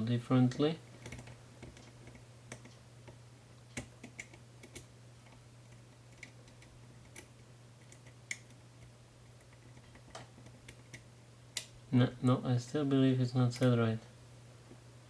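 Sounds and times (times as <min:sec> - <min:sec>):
lock pick clicking: 0:03.8 - 0:05.4.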